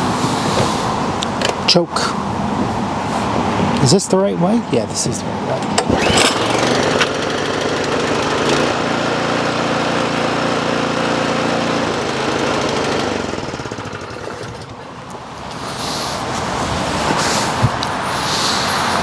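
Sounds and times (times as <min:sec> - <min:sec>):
snowblower engine running: 0:05.8 - 0:15.1.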